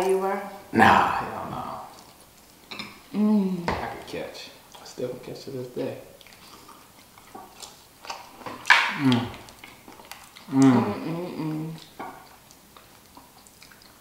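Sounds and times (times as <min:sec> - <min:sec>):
person making wordless sounds: 0:00.6 - 0:02.1, 0:03.1 - 0:05.8, 0:08.7 - 0:09.6, 0:10.4 - 0:12.0.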